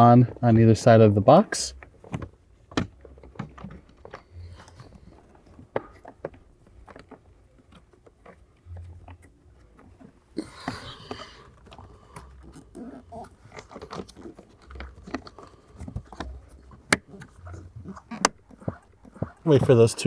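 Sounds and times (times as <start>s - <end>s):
plastic clicks and knocks: 1.8s - 9.3s, 13.5s - 19.4s.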